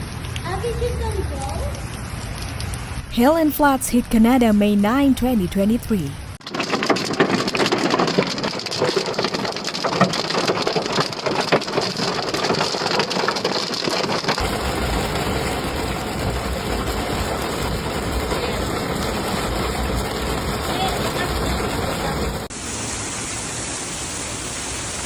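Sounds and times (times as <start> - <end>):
hail and heavy rain pelting: 0.0 - 3.1, 6.4 - 22.5.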